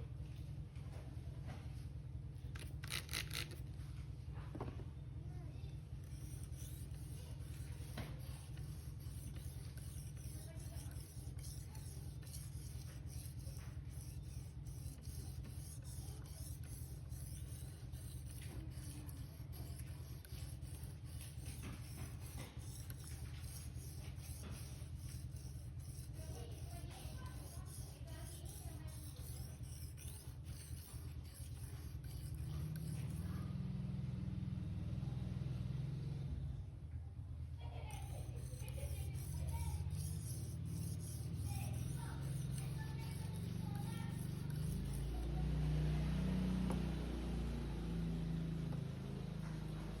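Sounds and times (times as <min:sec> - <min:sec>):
steady low hum: 0:00.0 - 0:35.6, 0:36.2 - 0:50.0
knife scraping on sharpener: 0:02.5 - 0:03.6, 0:06.0 - 0:33.3, 0:37.9 - 0:45.3.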